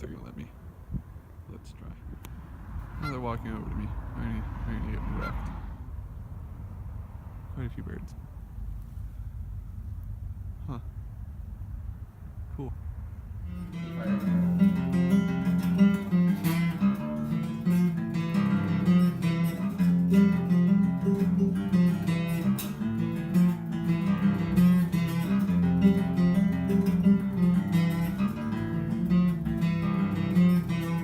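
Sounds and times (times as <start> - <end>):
acoustic guitar music: 13.4 - 31.0.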